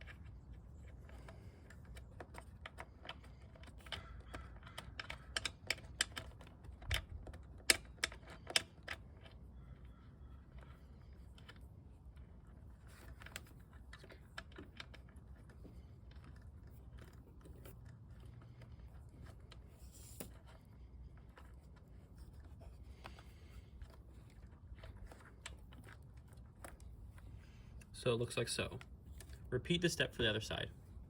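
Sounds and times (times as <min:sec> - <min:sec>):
small clicks and taps: 0:00.0 - 0:27.9
low room hum: 0:00.0 - 0:31.0.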